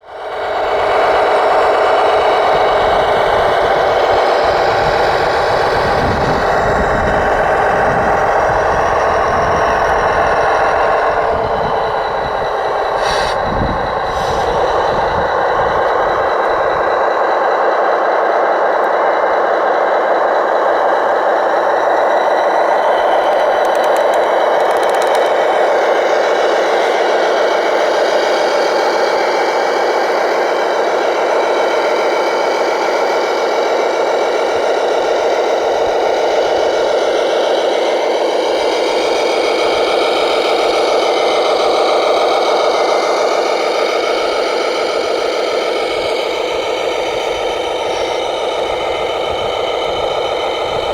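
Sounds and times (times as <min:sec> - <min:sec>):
engine-like drone: 0:00.0 - 0:50.9
low rumbling: 0:00.6 - 0:17.4.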